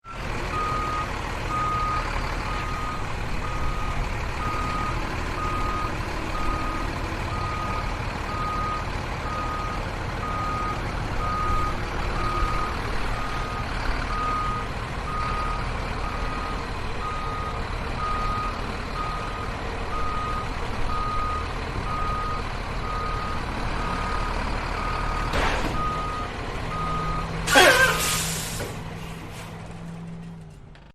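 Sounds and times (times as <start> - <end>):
diesel truck engine rumbling: 0.0 - 30.9
air brakes hissing: 27.5 - 29.6.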